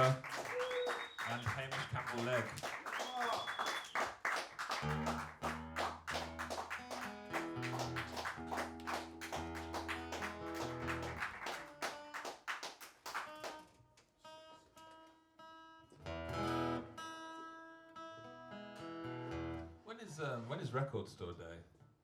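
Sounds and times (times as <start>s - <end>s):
acoustic guitar strumming: 4.8s - 11.8s, 15.5s - 19.8s.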